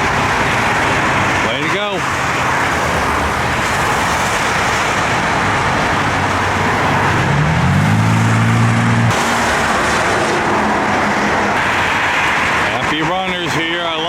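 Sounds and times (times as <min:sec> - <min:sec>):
passing vehicles hiss: 0:00.0 - 0:14.0
car engine accelerating: 0:02.1 - 0:12.6.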